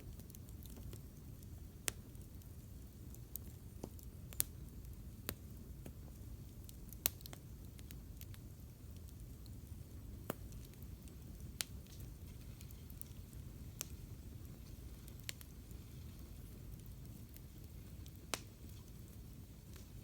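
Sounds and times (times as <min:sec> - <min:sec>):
campfire crackling and popping: 0:00.0 - 0:20.0.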